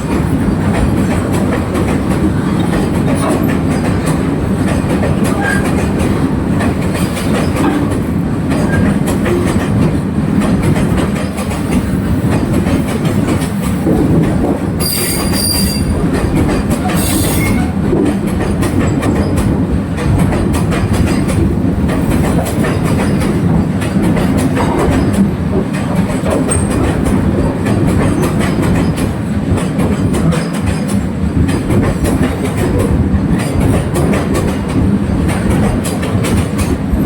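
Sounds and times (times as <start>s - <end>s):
train wheels rumbling on rails: 0.0s - 37.0s
high-pitched wheel squeal: 14.8s - 15.9s.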